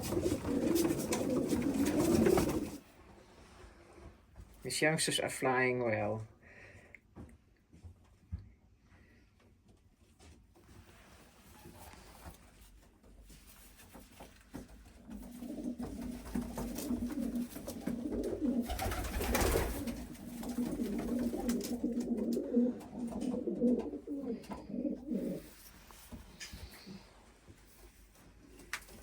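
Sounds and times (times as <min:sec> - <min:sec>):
pigeons cooing: 0:00.0 - 0:02.8, 0:15.1 - 0:25.6.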